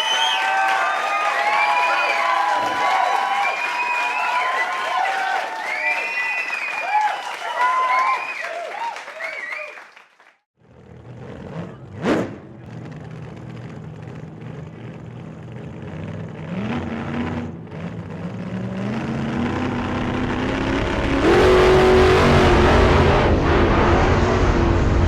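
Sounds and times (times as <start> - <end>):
car engine accelerating: 10.6 - 25.0.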